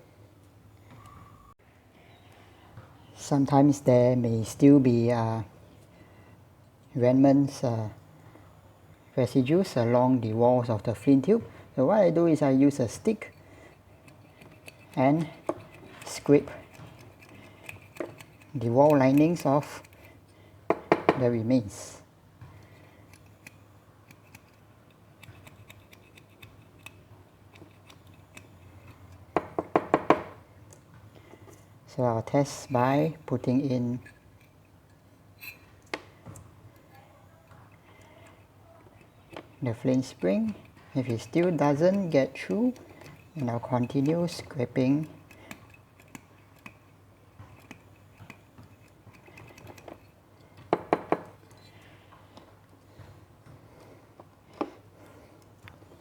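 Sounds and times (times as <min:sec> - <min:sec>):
stick scraping in metal tube: 0:12.3 - 0:20.1, 0:38.9 - 0:46.9
sharp knocks: 0:20.7 - 0:21.2, 0:29.4 - 0:30.4, 0:50.7 - 0:51.3.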